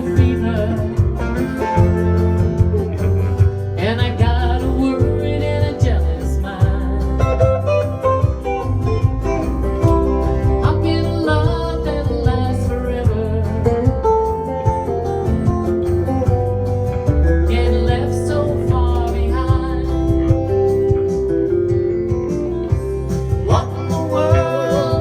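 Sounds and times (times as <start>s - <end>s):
bass: 0.0s - 25.0s
guitar playing: 0.0s - 25.0s
steady drum beat: 0.0s - 25.0s.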